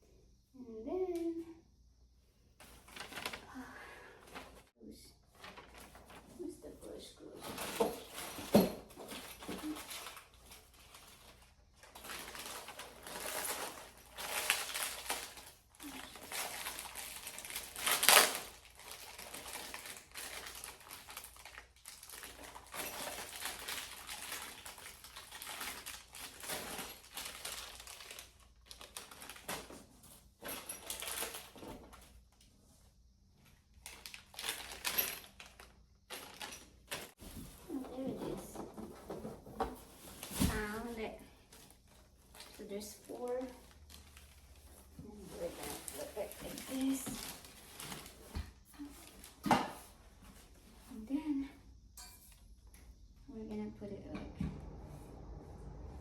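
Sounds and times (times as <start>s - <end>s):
small hardware parts clattering: 7.4s - 15.5s
packaging rustling: 7.4s - 32.2s, 33.8s - 50.9s.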